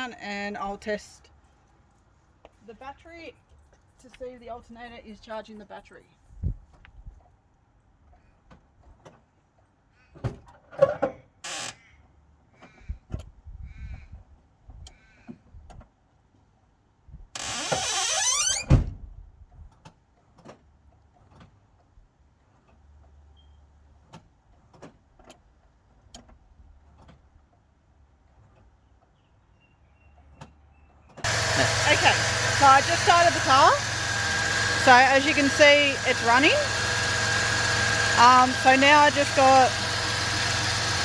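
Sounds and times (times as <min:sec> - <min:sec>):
car engine cranking and starting: 0:31.2 - 0:41.0
faint low engine running: 0:31.2 - 0:41.0.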